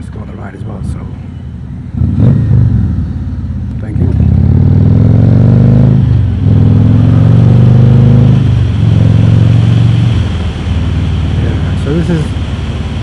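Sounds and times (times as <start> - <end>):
motorcycle engine accelerating: 1.7 - 13.0.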